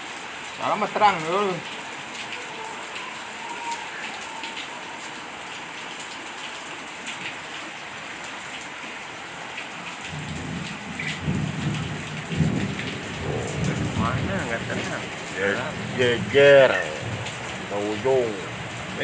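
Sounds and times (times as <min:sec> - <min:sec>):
steady rain falling: 0:00.0 - 0:19.0
low rumble: 0:12.7 - 0:18.9.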